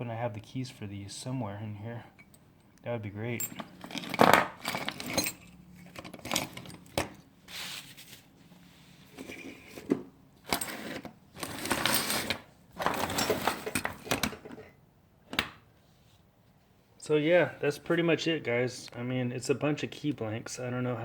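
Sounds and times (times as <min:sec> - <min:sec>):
metal keys clinking and jangling: 0:03.4 - 0:07.2.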